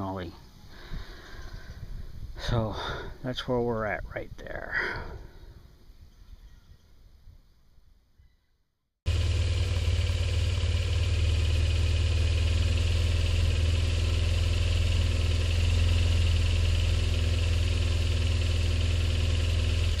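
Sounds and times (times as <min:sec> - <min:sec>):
vehicle engine idling: 0:09.1 - 0:20.0.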